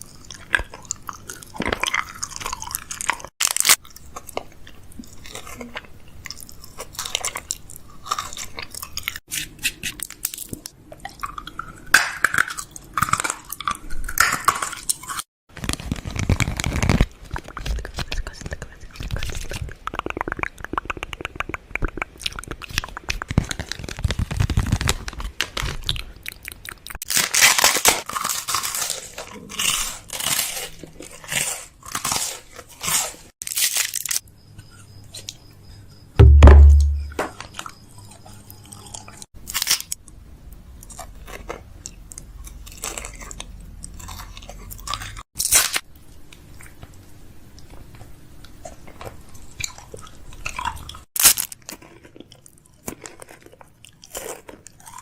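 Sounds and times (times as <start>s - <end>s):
close-up crunching and crackling: 0.0s - 34.2s, 36.8s - 55.0s
heavy low thump: 36.2s - 37.2s.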